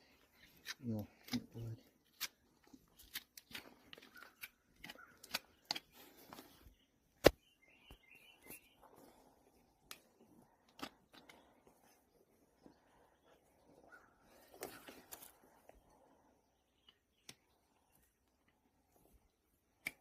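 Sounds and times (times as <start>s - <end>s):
hoof nippers snipping: 0.4s - 8.0s.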